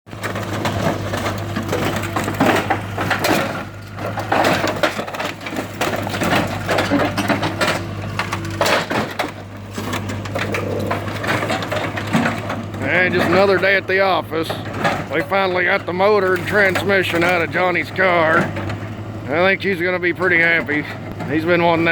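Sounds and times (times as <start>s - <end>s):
excavator engine drone: 0.1s - 21.9s
sheet metal crunching and creaking: 0.1s - 21.9s.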